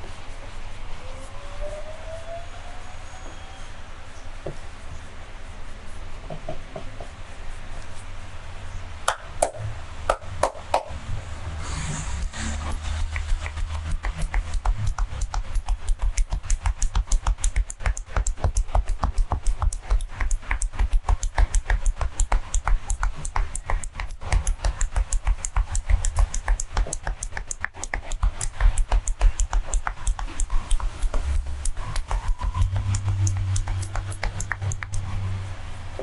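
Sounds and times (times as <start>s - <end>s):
hands slapping a body: 13.0s - 35.1s.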